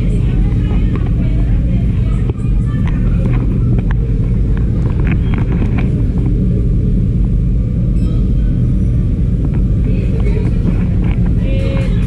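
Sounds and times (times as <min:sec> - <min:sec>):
faint clatters: 0:00.0 - 0:06.4, 0:09.4 - 0:12.0
distant voices: 0:00.0 - 0:12.0
loud low rumble: 0:00.0 - 0:12.0.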